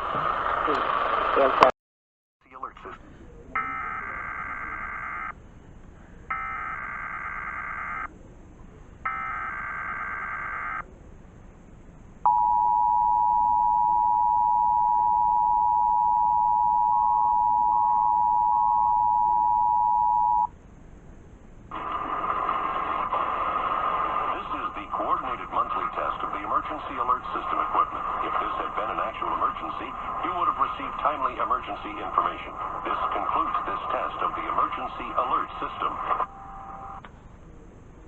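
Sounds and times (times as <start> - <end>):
voice message: 2.4 - 4.8, 24.3 - 36.3
two-tone attention signal: 12.3 - 20.5.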